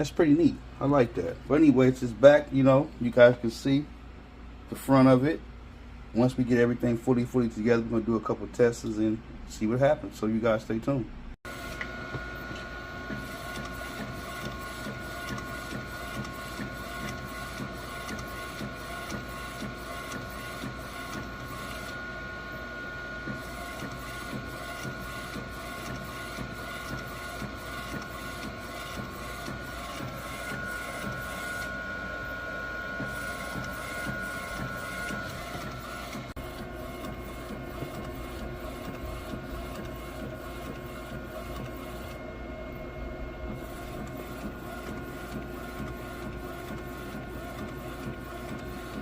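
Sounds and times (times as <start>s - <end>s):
printer motor whine: 11.5s - 49.0s.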